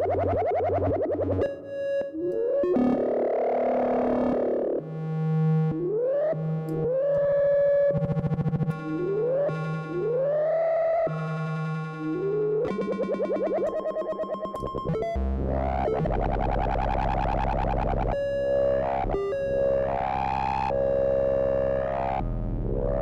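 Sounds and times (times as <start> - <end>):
synthesizer electronic tones: 12.0 - 18.2.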